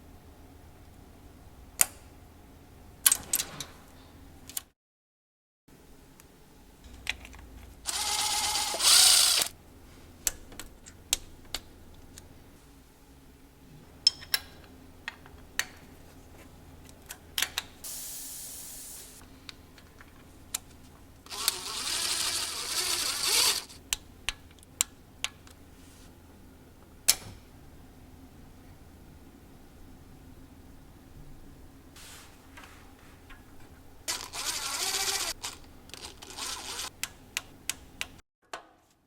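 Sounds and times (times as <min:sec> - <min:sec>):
power tool running: 0:07.9 - 0:09.5, 0:21.3 - 0:23.8, 0:34.1 - 0:36.9.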